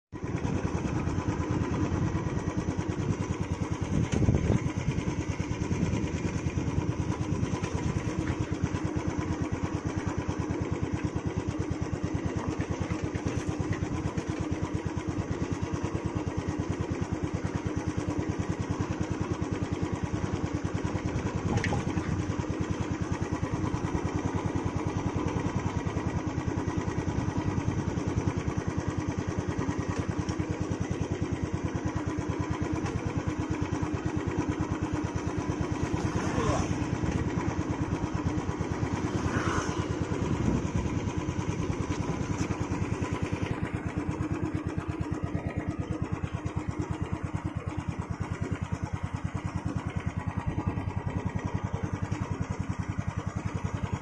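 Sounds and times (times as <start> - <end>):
motorcycle engine thumping: 0.2 - 11.0, 21.0 - 23.6, 25.6 - 39.0, 39.8 - 53.4.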